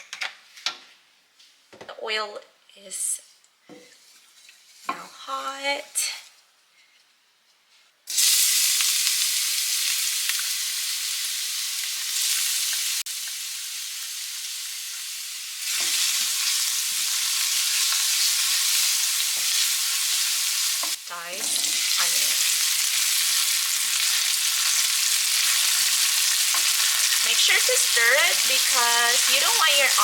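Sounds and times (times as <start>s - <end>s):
onions sizzling in hot oil: 8.1s - 30.0s.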